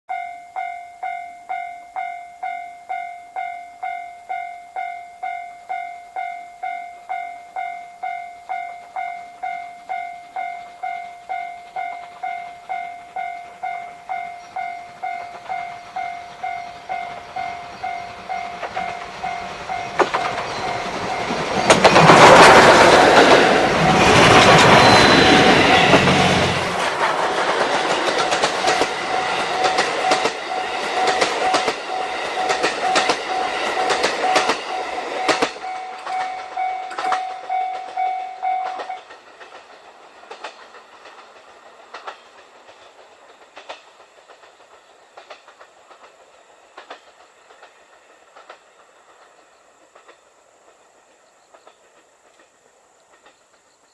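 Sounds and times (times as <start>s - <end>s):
steam train passing: 0.1s - 53.9s
level crossing bell dinging: 34.8s - 39.0s.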